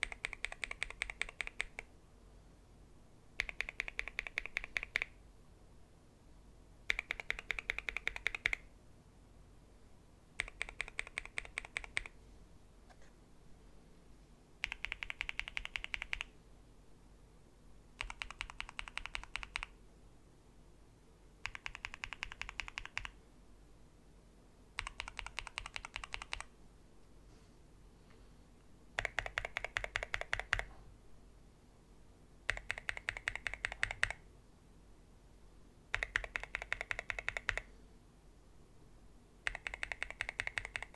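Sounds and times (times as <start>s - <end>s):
mechanical keyboard typing: 0.0s - 1.9s, 3.4s - 5.2s, 6.9s - 8.7s, 10.4s - 12.2s, 14.6s - 16.3s, 18.0s - 19.8s, 21.4s - 23.2s, 24.8s - 26.5s, 29.0s - 30.8s, 32.5s - 34.2s, 35.9s - 37.7s, 39.4s - 40.9s.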